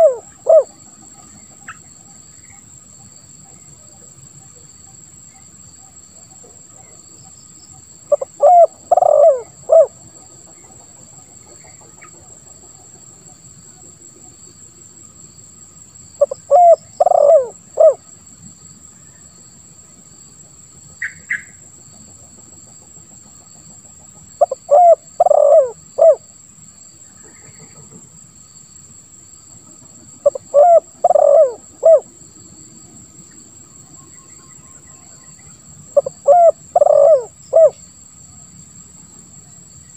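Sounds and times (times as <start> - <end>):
dove cooing: 0.0 - 0.8, 8.1 - 10.0, 16.2 - 18.0, 24.4 - 26.2, 30.2 - 32.1, 36.0 - 37.8.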